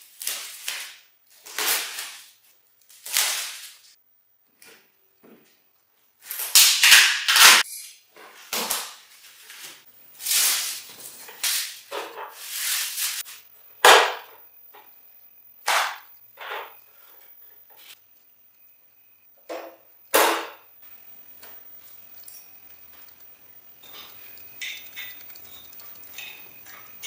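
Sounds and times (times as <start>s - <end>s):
sharp crack: 6.3s - 7.6s
welding arc crackling: 8.6s - 27.0s.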